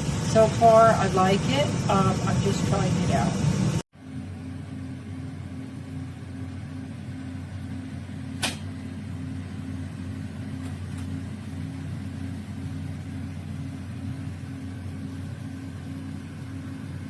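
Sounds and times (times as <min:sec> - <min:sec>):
air fryer fan humming: 0:00.0 - 0:17.0
sharp click: 0:08.4 - 0:08.7.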